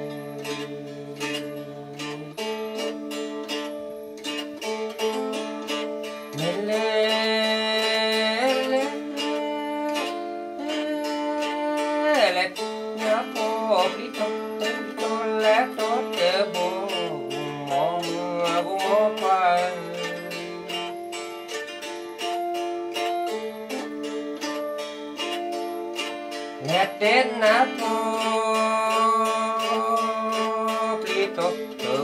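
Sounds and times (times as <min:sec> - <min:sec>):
man singing: 0:00.0 - 0:03.0, 0:06.3 - 0:20.9, 0:26.6 - 0:32.0
plucked string instrument: 0:00.0 - 0:32.0.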